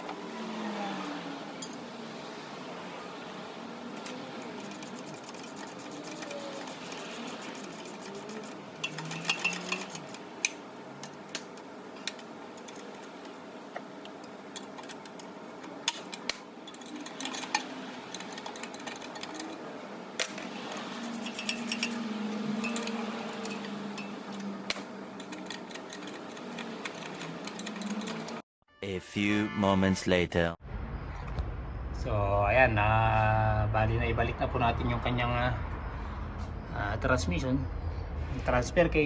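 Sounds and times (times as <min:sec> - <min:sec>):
hand tools and metal parts clinking: 0:01.0 - 0:01.9, 0:04.0 - 0:13.4, 0:14.0 - 0:28.4
steady background hum: 0:01.1 - 0:28.4.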